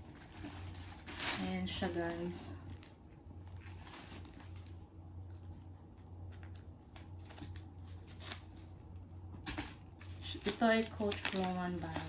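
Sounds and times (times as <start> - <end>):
handbag packaging rustling: 0.0 - 4.8, 9.4 - 12.0
steady low hum: 0.0 - 12.0.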